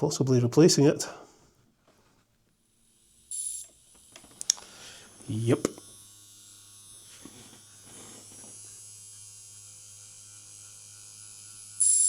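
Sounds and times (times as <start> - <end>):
small electric motor whining: 2.6 - 12.0.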